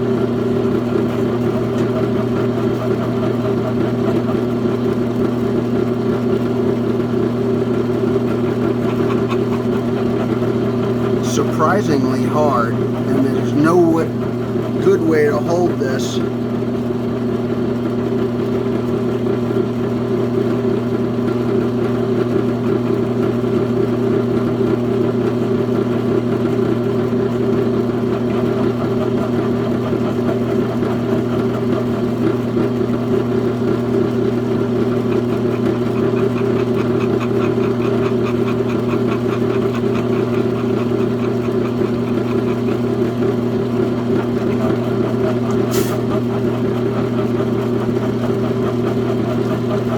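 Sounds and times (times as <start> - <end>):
machine tool motor humming: 34.4 - 49.9.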